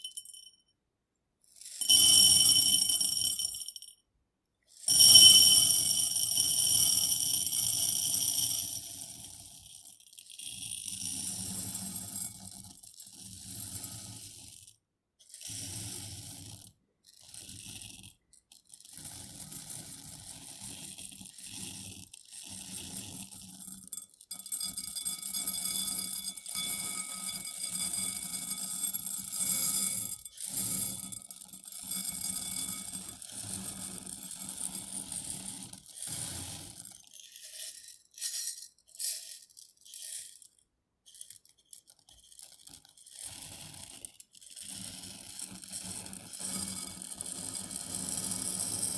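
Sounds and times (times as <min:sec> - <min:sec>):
rice pouring into glass bowl: 0:00.0 - 0:00.4, 0:01.8 - 0:03.9, 0:04.9 - 0:08.8, 0:36.5 - 0:40.5.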